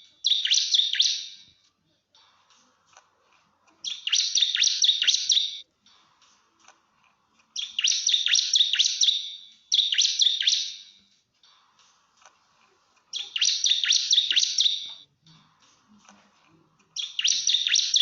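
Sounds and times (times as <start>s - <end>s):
bird singing fast sharp chirps: 0.0s - 1.5s, 3.8s - 5.6s, 7.6s - 11.0s, 13.1s - 15.0s, 17.0s - 18.0s.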